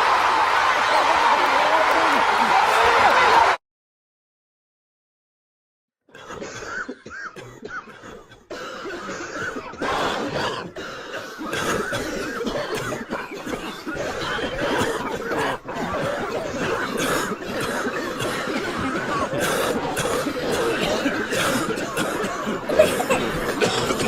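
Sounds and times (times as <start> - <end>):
crowd coughing: 0.4 - 3.6, 6.1 - 24.0.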